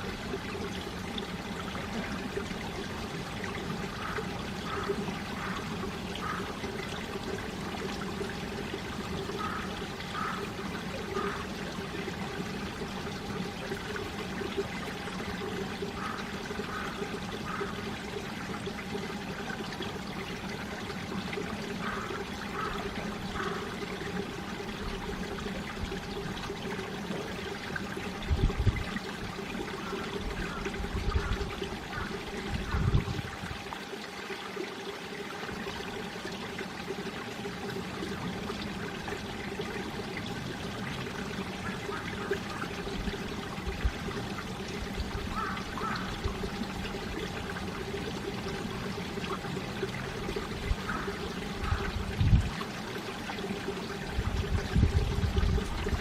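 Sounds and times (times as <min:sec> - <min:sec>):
stream water flowing: 0:00.0 - 0:56.0
wind buffeting microphone: 0:28.2 - 0:28.9, 0:32.5 - 0:33.6, 0:52.0 - 0:52.6, 0:54.2 - 0:56.0.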